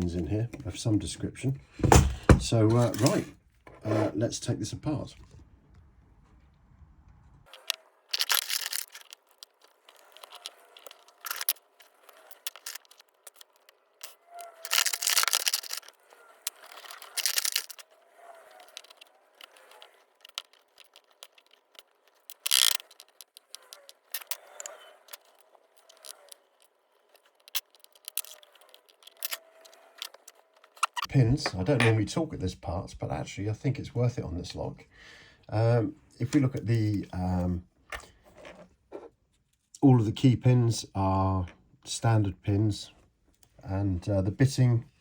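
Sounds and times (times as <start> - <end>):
handling noise: 5.8 - 32.0
small metallic clicks and rattles: 7.4 - 31.1.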